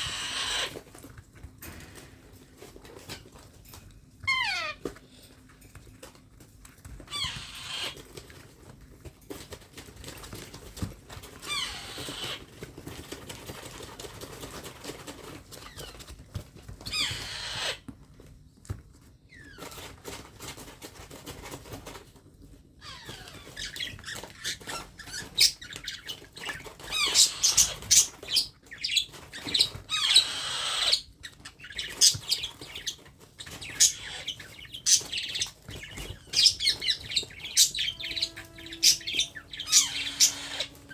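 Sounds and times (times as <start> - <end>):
parrot chirping and squawking: 0.0 - 0.8, 4.2 - 4.9, 7.0 - 8.2, 11.3 - 12.5, 16.8 - 17.8, 22.8 - 40.9.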